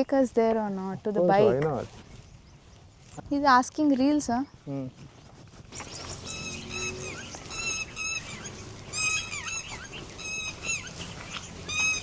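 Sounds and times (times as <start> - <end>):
birds alarm calling: 5.7 - 12.0.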